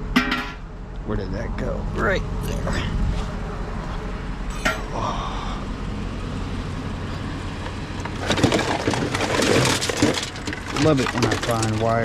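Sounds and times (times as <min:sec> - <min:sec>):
vehicle engine idling: 0:00.0 - 0:12.0
clatter of items being handled: 0:08.0 - 0:12.0.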